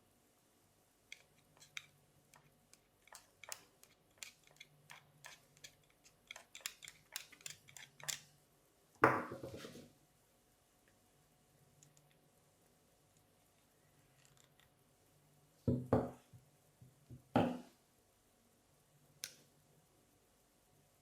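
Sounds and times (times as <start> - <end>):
metal parts clicking and tapping: 1.1 - 8.3.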